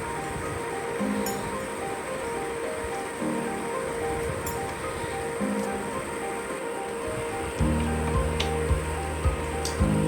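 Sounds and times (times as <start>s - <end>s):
background music with held notes: 0.0s - 10.0s
steady hiss: 0.0s - 10.0s.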